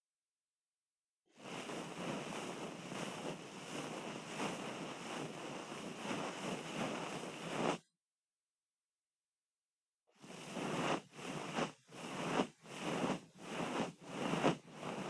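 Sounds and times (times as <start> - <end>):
scratching and rubbing ear: 1.5 - 7.8.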